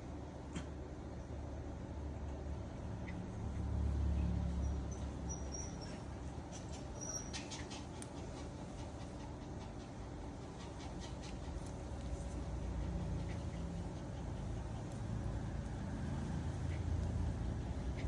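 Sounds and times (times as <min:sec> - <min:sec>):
puppy squeaking and crying: 0:05.3 - 0:06.0, 0:06.8 - 0:07.8.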